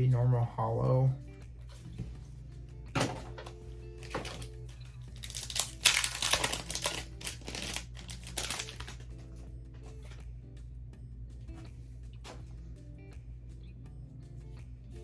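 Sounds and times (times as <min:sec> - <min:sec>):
soft background music: 0:00.0 - 0:15.0
foil wrapper crinkling: 0:05.1 - 0:09.1.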